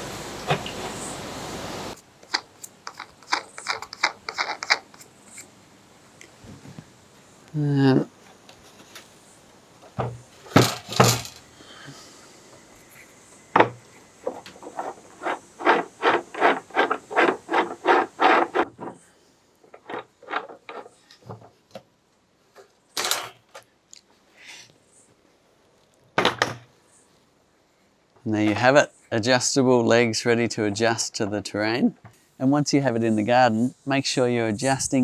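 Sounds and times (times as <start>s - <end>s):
rubbing strokes of screw thread: 1.9s - 5.5s, 12.8s - 21.2s
wooden knocks: 9.9s - 11.4s, 13.6s - 19.0s.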